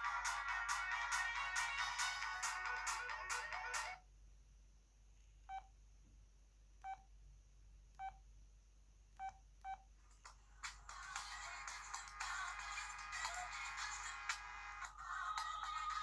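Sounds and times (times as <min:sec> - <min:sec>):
phone ringtone: 0:00.0 - 0:04.0.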